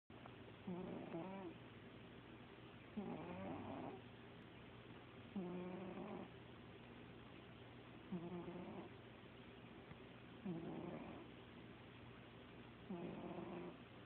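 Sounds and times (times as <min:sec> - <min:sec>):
pet snoring: 0:00.6 - 0:01.6, 0:02.9 - 0:04.0, 0:05.3 - 0:06.3, 0:08.1 - 0:09.0, 0:10.4 - 0:11.3, 0:12.9 - 0:13.8.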